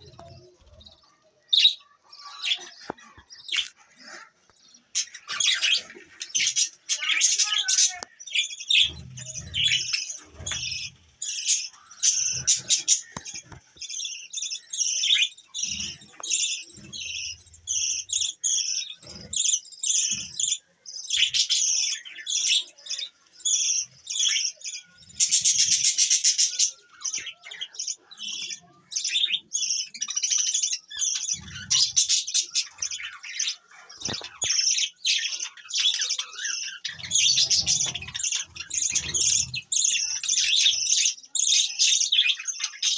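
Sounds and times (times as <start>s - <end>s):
budgerigars chattering: 0.0s - 42.9s.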